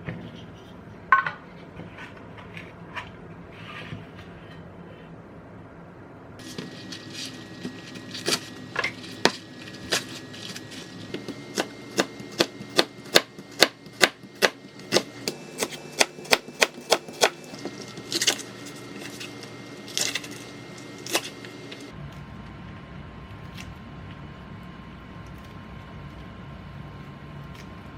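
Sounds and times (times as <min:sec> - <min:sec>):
knife chopping on cutting board: 0:09.2 - 0:18.4.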